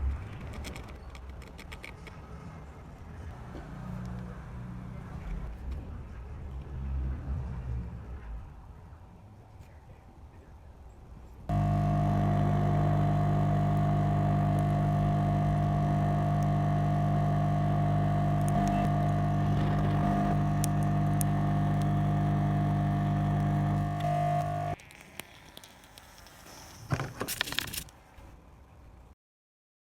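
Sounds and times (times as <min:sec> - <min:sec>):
machine humming with fixed tones: 0:11.5 - 0:24.8.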